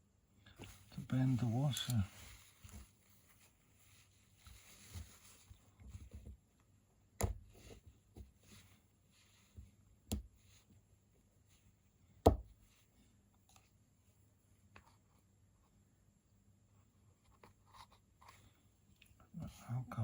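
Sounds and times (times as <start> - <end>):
handling clicks and rustles: 0.5 - 3.5.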